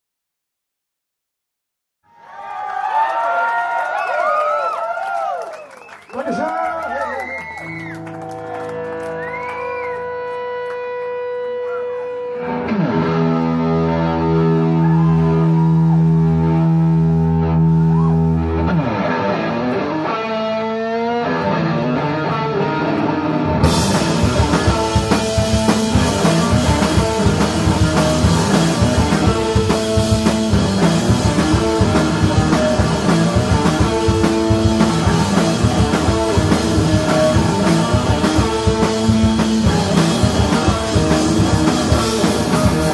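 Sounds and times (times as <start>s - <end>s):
drums: 4.3s - 42.9s
rock band playing: 6.8s - 42.9s
electric guitar tones: 7.3s - 42.9s.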